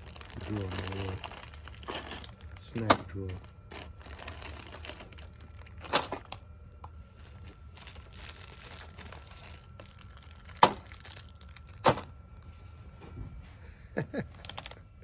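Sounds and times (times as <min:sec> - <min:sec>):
plastic wrappers crinkling: 0:00.0 - 0:06.4, 0:07.1 - 0:12.2, 0:14.4 - 0:14.8.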